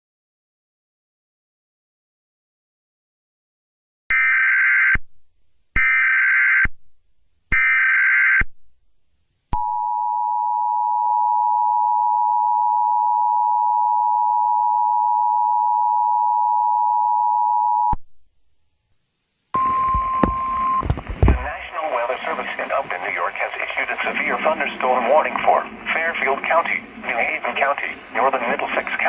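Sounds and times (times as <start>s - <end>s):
two-tone attention signal: 19.6s - 21.5s
digital data header bursts: 21.2s - 29.0s.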